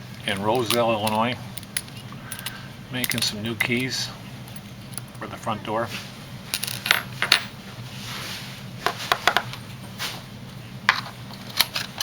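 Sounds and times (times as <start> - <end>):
steady low hum: 0.0 - 12.0
keys and lock clicking: 0.3 - 3.9.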